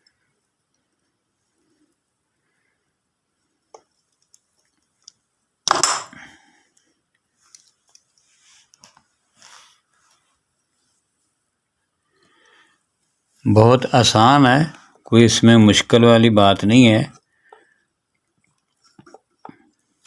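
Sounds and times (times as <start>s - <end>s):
wires scraping and rustling: 7.2s - 11.4s.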